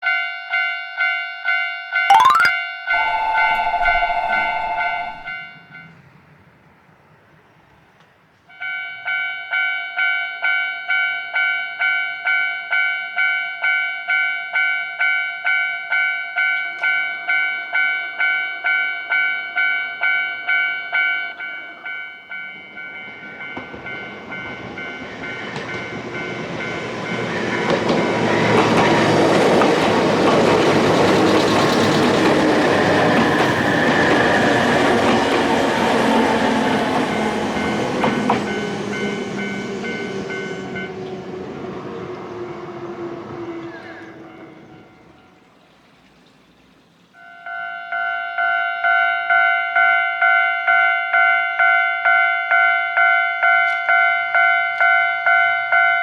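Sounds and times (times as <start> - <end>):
level-crossing warning bell: 0.0 - 2.3, 3.0 - 6.1, 8.5 - 45.4, 47.2 - 56.0
train running past: 3.0 - 7.6, 21.8 - 46.8.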